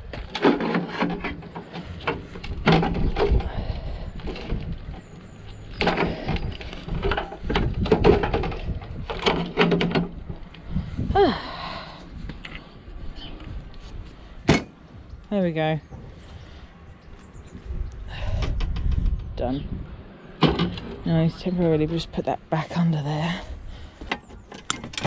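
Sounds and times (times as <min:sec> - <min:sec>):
metal knocks and clanks: 0:05.7 - 0:10.4.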